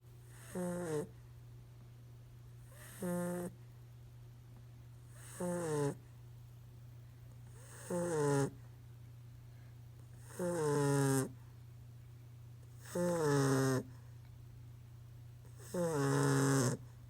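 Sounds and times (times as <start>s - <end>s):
puppy snoring: 0.2s - 1.2s, 2.6s - 3.6s, 5.0s - 6.0s, 7.5s - 8.6s, 10.1s - 11.4s, 12.7s - 14.0s, 15.5s - 16.9s.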